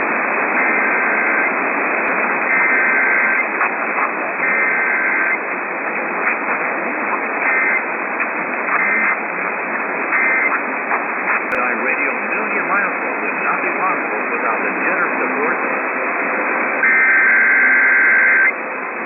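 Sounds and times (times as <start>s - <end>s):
radio static hiss: 0.0s - 19.0s
buzzing two-tone digital bursts: 16.8s - 18.5s.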